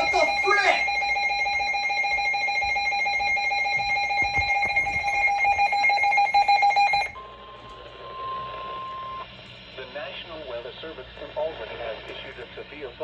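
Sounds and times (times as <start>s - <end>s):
pulsing electronic ringing tone: 0.0s - 9.2s
steady alarm tone: 0.0s - 9.3s.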